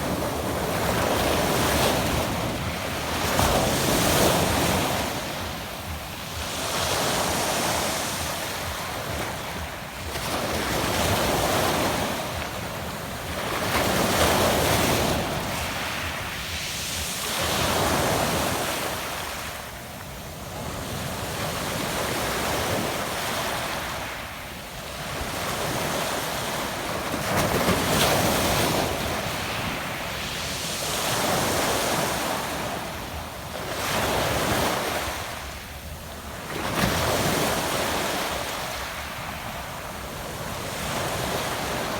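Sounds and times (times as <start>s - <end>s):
waves washing up pebble beach: 0.0s - 19.9s, 25.0s - 35.6s.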